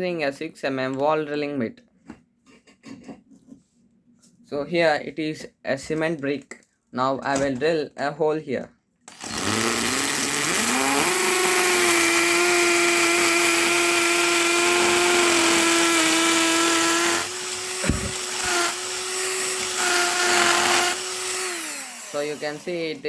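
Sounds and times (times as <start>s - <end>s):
drill knock: 9.1s - 23.0s
hammer drill whine: 9.1s - 23.0s.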